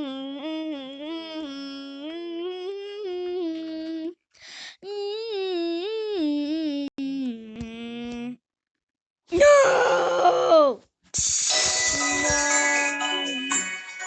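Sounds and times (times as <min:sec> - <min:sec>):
high voice humming a tune: 0:00.0 - 0:04.2, 0:04.8 - 0:08.4
breath-like hiss: 0:11.2 - 0:11.9.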